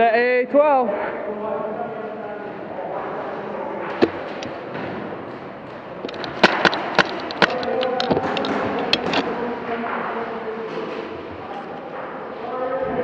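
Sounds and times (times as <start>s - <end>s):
airsoft gunfire: 3.9s - 4.8s, 6.0s - 9.2s
pellet hits: 3.9s - 5.2s, 6.0s - 9.4s.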